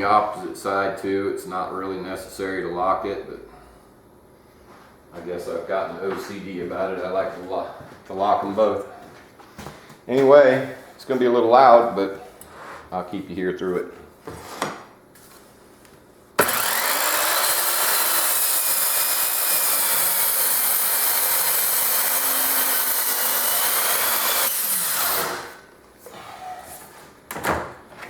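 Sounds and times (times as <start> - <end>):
circular saw cutting sheet: 16.4 - 25.6
saw winding down: 16.4 - 25.6.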